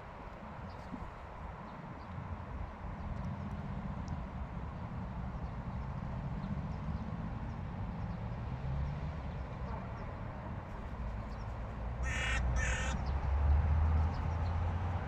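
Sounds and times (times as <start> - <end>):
crow cawing: 12.0 - 13.0.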